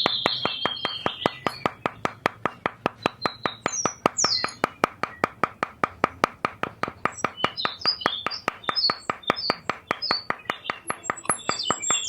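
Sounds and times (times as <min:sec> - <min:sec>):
birds chirping: 0:00.0 - 0:12.0
sharp even clicks: 0:00.0 - 0:12.0.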